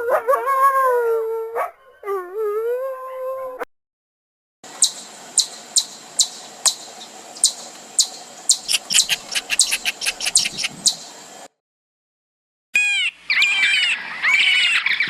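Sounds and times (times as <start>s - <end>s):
high-pitched animal chirps: 8.5s - 11.0s.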